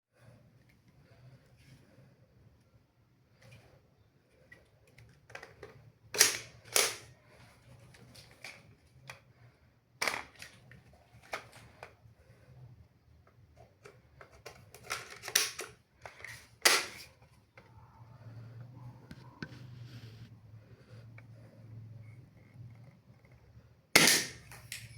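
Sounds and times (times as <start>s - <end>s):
plastic handling clicks: 13.8s - 17.1s.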